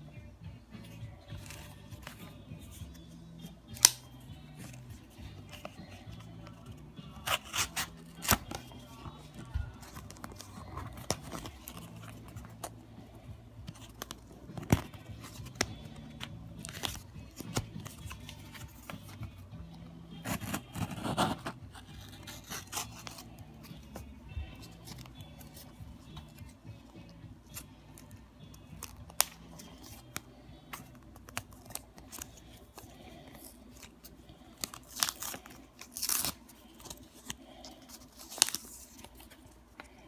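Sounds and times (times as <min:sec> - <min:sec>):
soft background music: 0:00.0 - 0:40.0.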